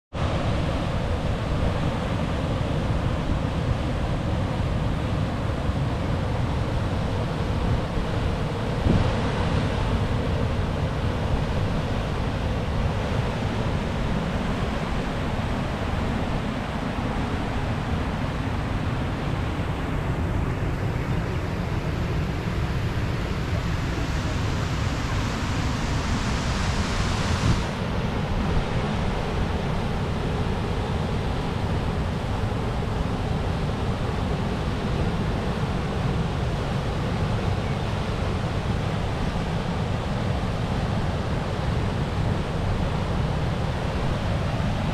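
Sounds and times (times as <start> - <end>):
rushing water: 0.2 - 44.9
wind buffeting microphone: 14.0 - 30.7.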